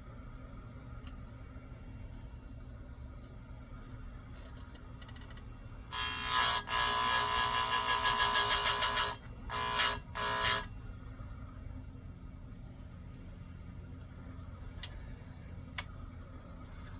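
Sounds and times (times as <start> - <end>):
chain grinder whining: 5.9 - 10.7, 16.7 - 16.9.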